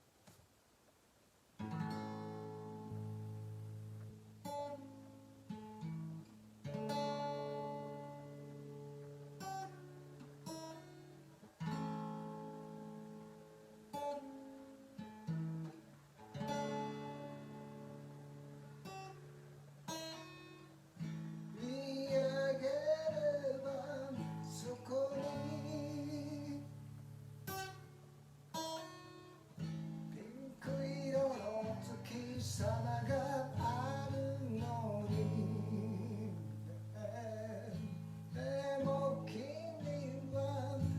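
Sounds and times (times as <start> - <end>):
acoustic guitar strumming: 1.6 - 40.9
person singing: 21.6 - 26.7, 30.2 - 40.9.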